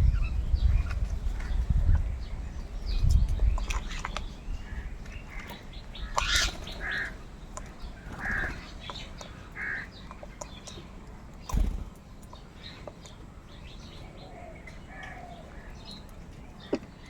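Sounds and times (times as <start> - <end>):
bird clicks and chirps: 2.8 - 13.2
crows cawing: 4.7 - 7.2, 8.0 - 8.7, 9.3 - 10.0.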